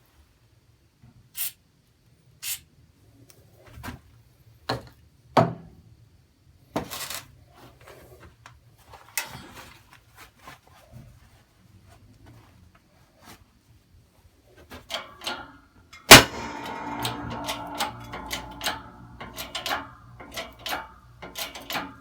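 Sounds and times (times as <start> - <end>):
tools knocking and clattering: 14.8 - 22.0.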